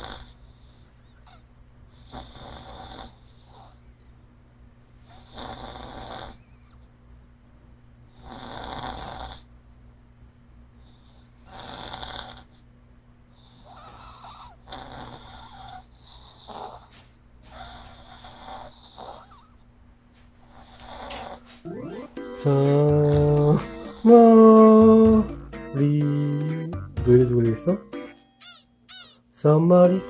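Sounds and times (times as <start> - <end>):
small dog snoring: 0.0 - 4.1, 5.0 - 6.8, 8.1 - 9.5, 10.8 - 12.6, 13.4 - 19.6, 20.4 - 21.8, 22.9 - 25.4.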